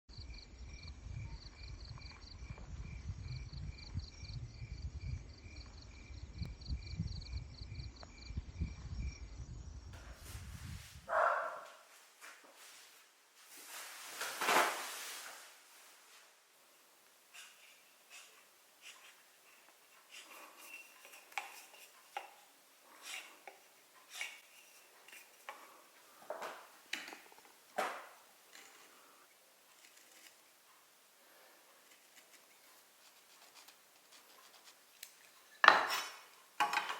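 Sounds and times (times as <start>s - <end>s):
insects chirping: 0.1s - 10.0s
wood scraping: 17.2s - 30.5s
tools and wood knocking on workbench: 26.3s - 28.2s, 35.6s - 36.9s.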